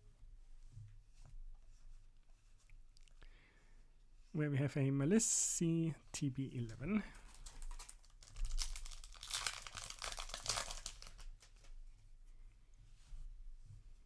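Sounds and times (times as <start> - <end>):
foil wrapper crinkling and tearing: 7.1 - 11.7.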